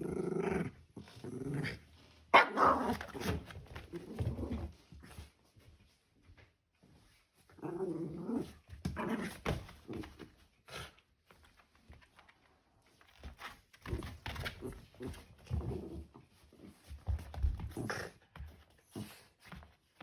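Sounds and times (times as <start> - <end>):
dog growling playfully: 0.0 - 1.9, 7.5 - 10.8, 14.7 - 16.7, 17.6 - 18.3.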